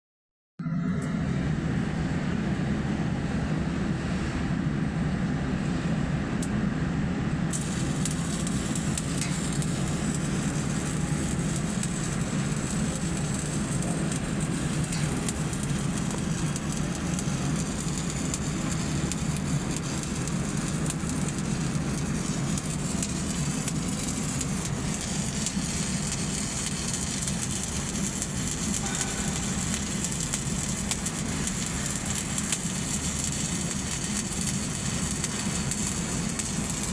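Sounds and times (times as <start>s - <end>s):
constant low hum: 0.6s - 36.9s
welding arc crackling: 7.5s - 36.9s.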